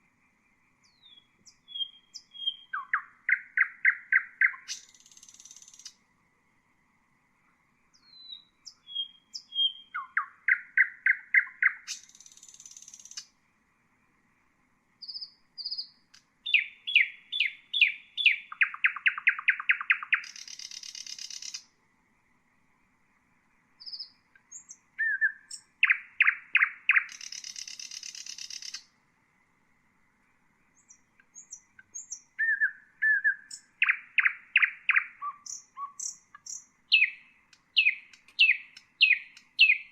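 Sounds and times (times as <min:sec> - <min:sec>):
nightingale singing: 0:00.0 - 0:06.1, 0:07.4 - 0:13.4, 0:15.0 - 0:21.8, 0:23.7 - 0:29.0, 0:30.6 - 0:39.9.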